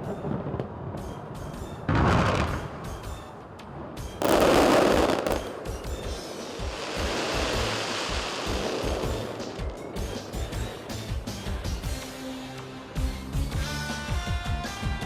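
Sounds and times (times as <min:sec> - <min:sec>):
fireworks thumps and crackling: 0:00.6 - 0:03.2, 0:04.0 - 0:12.2
fireworks booming: 0:04.1 - 0:12.1.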